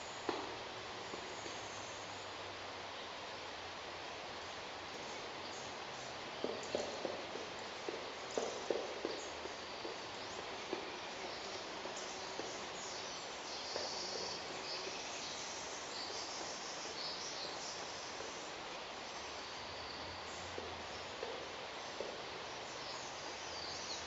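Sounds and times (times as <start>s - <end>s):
background hiss: 0.0s - 24.0s
woodpecker knocking on wood: 6.4s - 15.0s, 20.6s - 22.3s
high bird calls: 10.1s - 18.6s.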